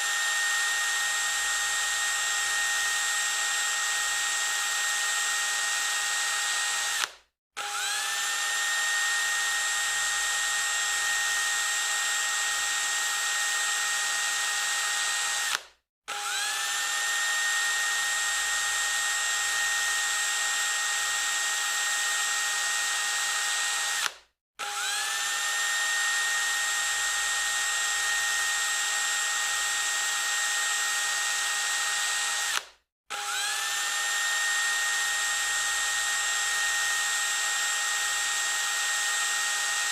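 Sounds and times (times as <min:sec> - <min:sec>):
electric drill whining: 0:00.0 - 0:39.9.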